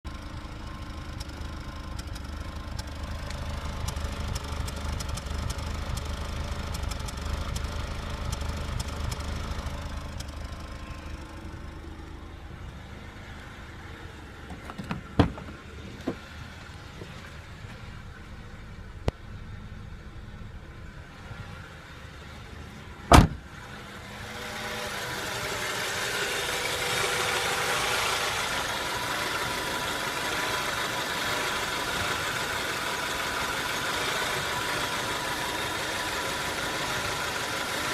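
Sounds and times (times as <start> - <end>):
car engine idling roughly: 0.1 - 12.8, 24.2 - 37.9.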